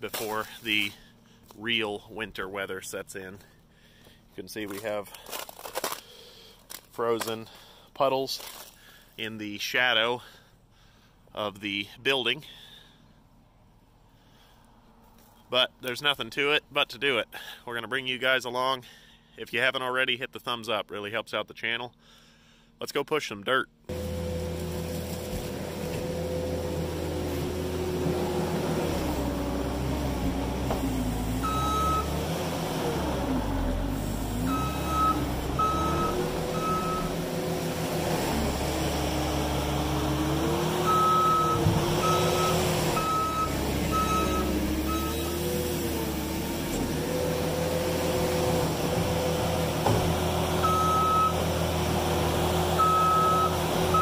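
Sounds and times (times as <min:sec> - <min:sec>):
diesel engine under load: 0:23.8 - 0:54.0
reversing alarm beeping: 0:31.4 - 0:32.1, 0:34.5 - 0:37.2, 0:40.8 - 0:45.4, 0:50.6 - 0:51.4, 0:52.8 - 0:54.0.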